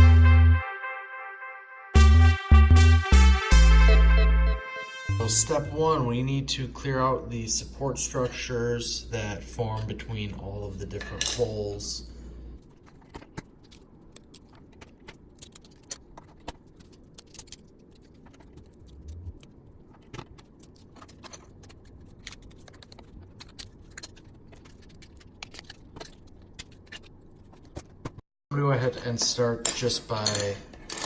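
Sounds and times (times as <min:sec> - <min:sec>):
plastic clicks and scrapes: 0:12.6 - 0:28.2.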